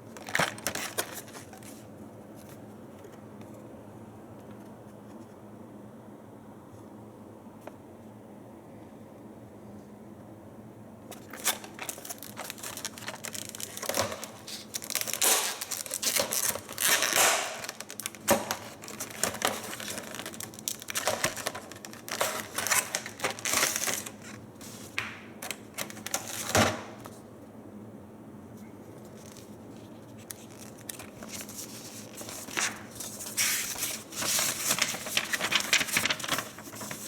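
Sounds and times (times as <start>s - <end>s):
cardboard and plastic rustling: 0.1s - 3.6s, 11.1s - 27.2s, 28.9s - 37.0s
packaging clicks and knocks: 11.4s - 24.2s.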